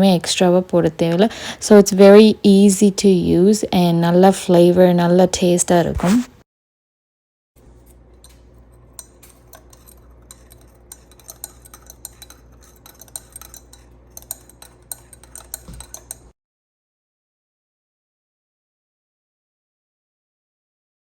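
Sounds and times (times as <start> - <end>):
low steady hum: 0.0 - 6.3, 7.6 - 16.3
teaspoon clinking in a mug: 8.1 - 16.3.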